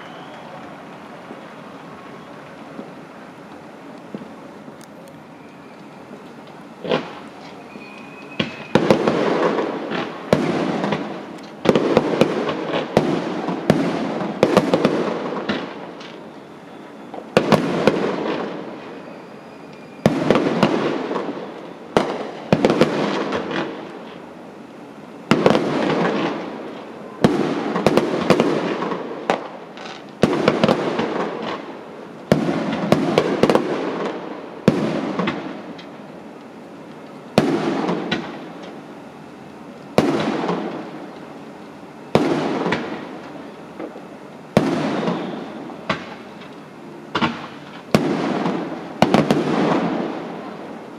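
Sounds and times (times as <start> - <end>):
fireworks bursting with bangs: 0.0 - 50.9.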